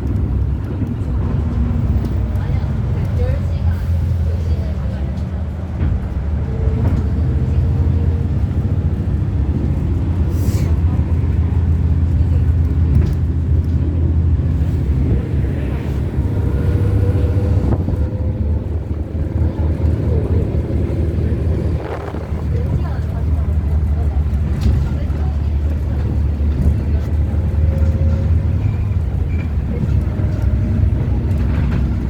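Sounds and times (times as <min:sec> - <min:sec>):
bus engine and road noise: 0:00.0 - 0:32.0.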